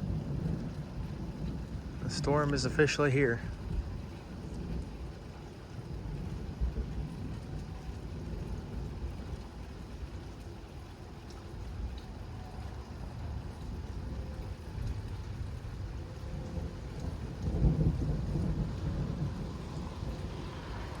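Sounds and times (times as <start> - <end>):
thunder rumbling: 0.0 - 10.3, 11.7 - 21.0.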